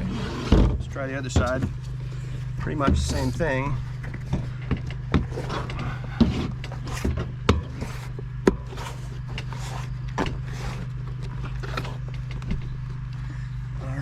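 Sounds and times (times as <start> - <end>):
tire rubbing against rim: 0.0 - 12.8
steady low hum: 0.0 - 14.0.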